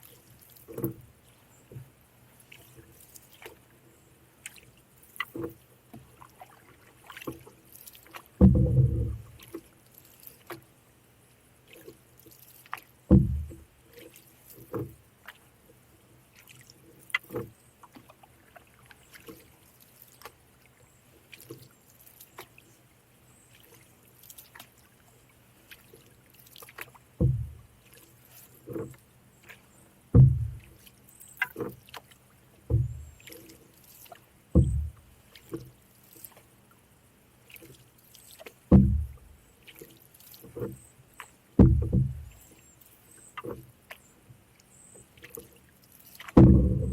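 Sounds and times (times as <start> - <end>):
quiet water: 0.0 - 46.9
paddle thuds: 8.4 - 9.4, 13.1 - 13.6, 26.7 - 27.7, 30.1 - 30.8, 32.7 - 33.1, 34.5 - 35.7, 38.7 - 39.4, 41.6 - 42.4, 46.2 - 46.9.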